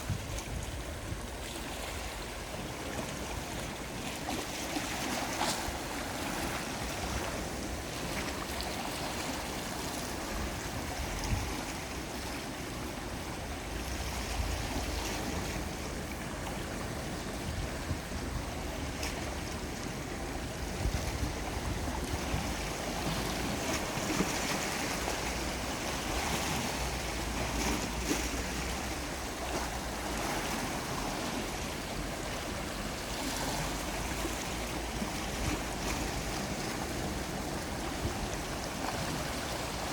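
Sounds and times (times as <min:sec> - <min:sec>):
sea waves washing in: 0:00.0 - 0:39.9
wave splashes: 0:00.0 - 0:39.9.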